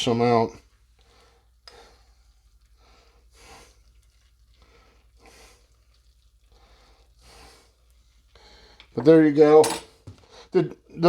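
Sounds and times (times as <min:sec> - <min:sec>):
faint breathing: 0:01.0 - 0:03.9, 0:06.5 - 0:09.0.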